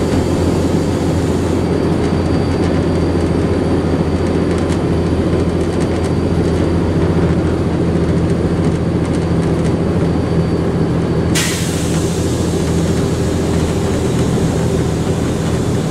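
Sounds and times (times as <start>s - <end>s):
loud hiss: 0.0s - 1.7s, 11.4s - 15.9s
turbocharger whistle: 0.0s - 4.3s
bus engine running: 0.0s - 15.9s.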